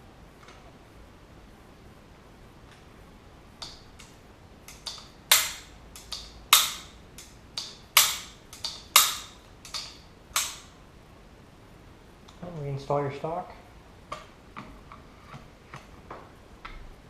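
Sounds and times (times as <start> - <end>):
rifle metallic clacks: 3.6 - 10.8.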